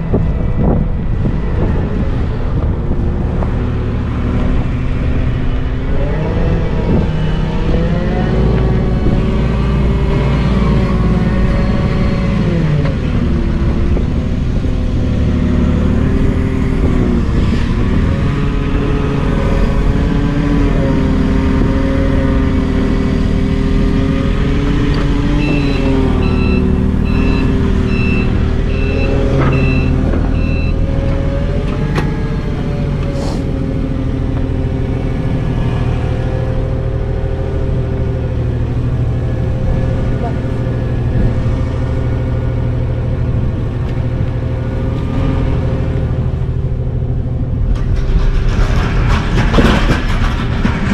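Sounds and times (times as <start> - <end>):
heavy truck engine running: 0.0 - 50.9
reversing alarm beeps: 25.4 - 30.9.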